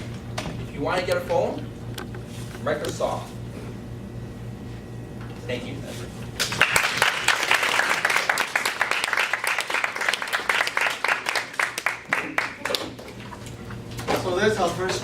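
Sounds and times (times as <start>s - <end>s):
audience clapping: 6.4s - 13.2s.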